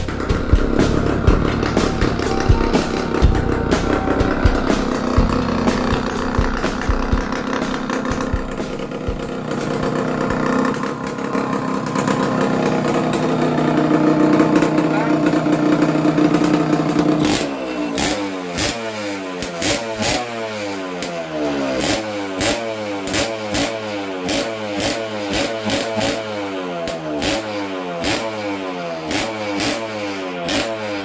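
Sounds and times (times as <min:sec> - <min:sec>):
engine pops: 0:00.0 - 0:17.5
two-stroke engine revving: 0:00.0 - 0:31.0.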